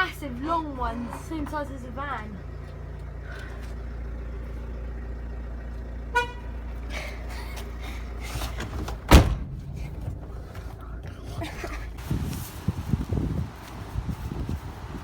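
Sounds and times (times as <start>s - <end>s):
van engine running: 0.0s - 15.0s
vehicle horn toot: 6.1s - 6.7s
loud thump: 8.6s - 10.9s.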